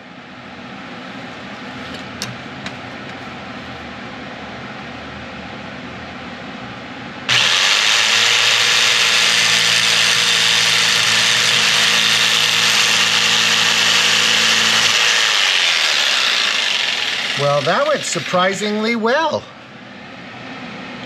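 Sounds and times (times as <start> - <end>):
jigsaw cutting metal: 7.3 - 18.8.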